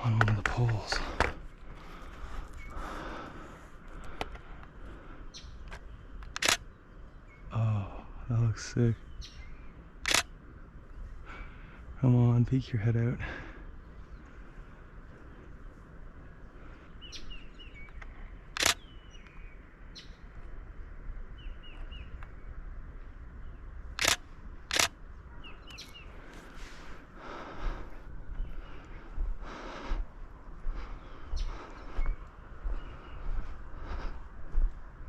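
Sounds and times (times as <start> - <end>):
small birds chirping: 0.0 - 35.0
camera shutter firing: 6.2 - 6.6, 10.0 - 10.3, 18.5 - 18.8, 24.0 - 25.0.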